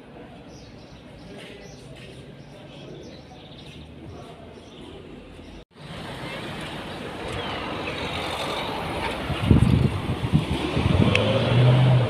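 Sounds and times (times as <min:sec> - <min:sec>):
road traffic rushing: 0:03.8 - 0:12.0.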